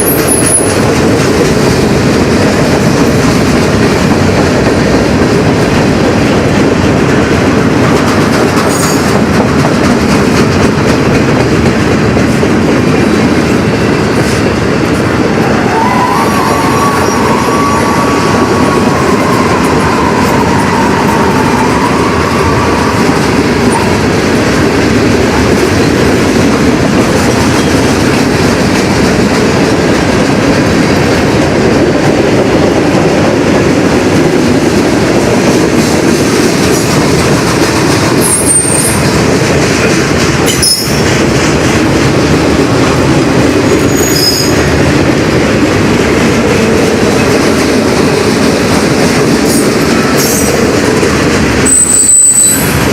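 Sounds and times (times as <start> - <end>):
train wheels squealing: 0.0 - 0.8, 38.2 - 39.0, 40.5 - 41.1, 43.8 - 44.7, 51.6 - 52.9
freight train rumbling on rails: 0.0 - 52.9.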